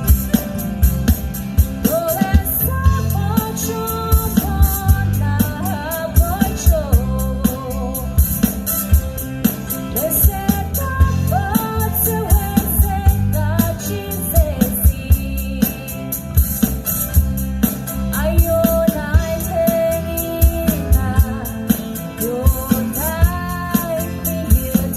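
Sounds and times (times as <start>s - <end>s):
bass: 0.0s - 24.9s
person singing: 1.8s - 8.5s, 18.2s - 24.9s.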